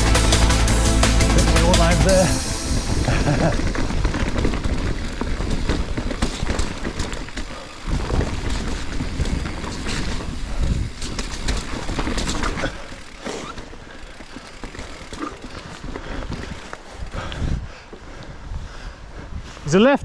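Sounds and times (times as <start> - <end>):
heavy low rumble: 0.0 - 6.0
bike rattling over rocks: 3.0 - 18.6.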